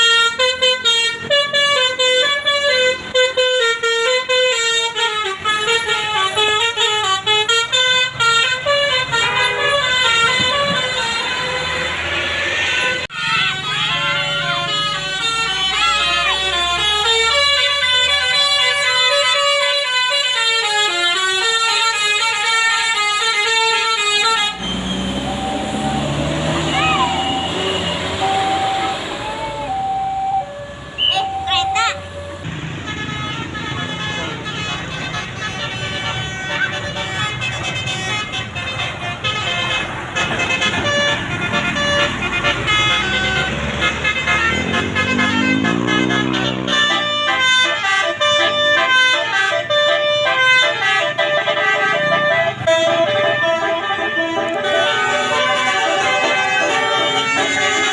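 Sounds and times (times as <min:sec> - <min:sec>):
bus engines and traffic rumble: 0:00.0 - 0:57.9
musical air horn tune: 0:00.0 - 0:57.9.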